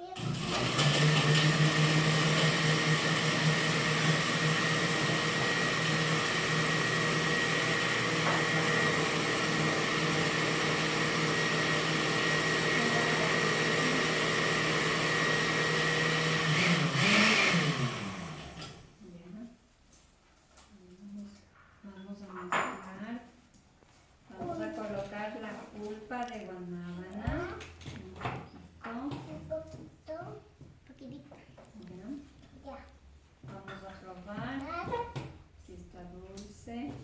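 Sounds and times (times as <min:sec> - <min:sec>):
electric blender running: 0:00.1 - 0:18.9.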